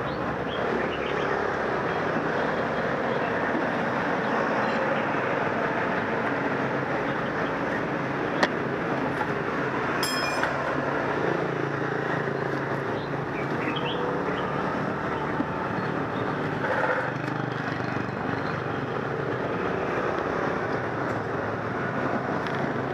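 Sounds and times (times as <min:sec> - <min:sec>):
motor and street noise: 0:00.0 - 0:22.9
metallic clinking: 0:10.0 - 0:10.7.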